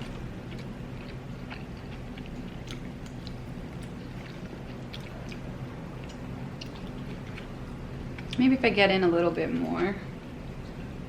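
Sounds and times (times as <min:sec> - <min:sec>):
person chewing: 0:00.0 - 0:08.4
low background hum: 0:00.0 - 0:11.0.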